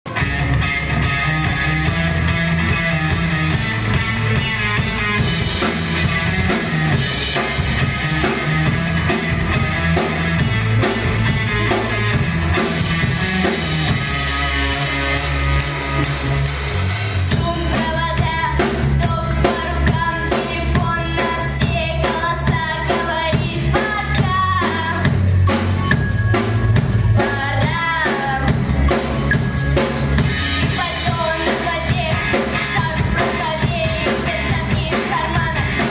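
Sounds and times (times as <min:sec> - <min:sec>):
rock band playing: 0:00.0 - 0:35.9
person singing: 0:17.3 - 0:25.2.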